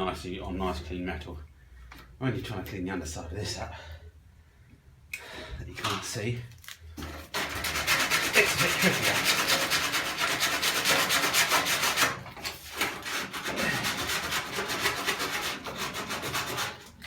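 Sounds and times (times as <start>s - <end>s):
abrasive pad sanding metal: 7.4s - 17.0s.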